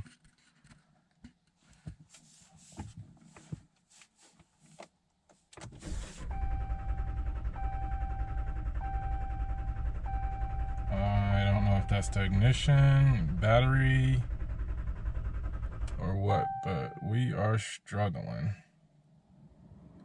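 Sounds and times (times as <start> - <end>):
fast low pulsing: 6.3 - 17.2
dash warning chime: 16.3 - 17.4.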